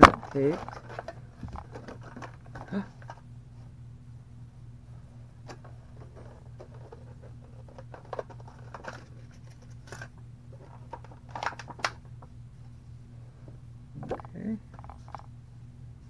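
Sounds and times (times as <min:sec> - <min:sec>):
steady low hum: 0:00.0 - 0:16.0
packaging rustles and clicks: 0:06.6 - 0:12.0.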